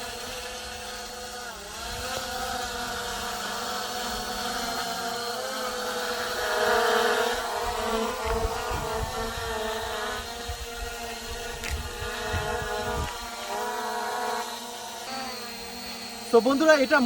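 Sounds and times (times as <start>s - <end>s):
drone buzzing whine: 0.0s - 17.0s
wind rumble on microphone: 7.6s - 13.3s.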